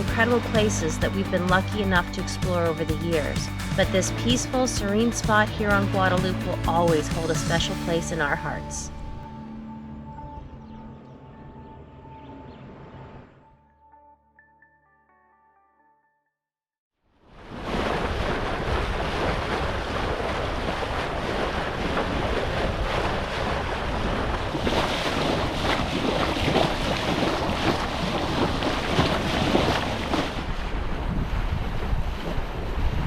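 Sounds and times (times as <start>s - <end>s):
waves and rushing water: 0.0s - 9.2s, 17.3s - 33.0s
wind rumbling on microphone: 17.4s - 33.0s.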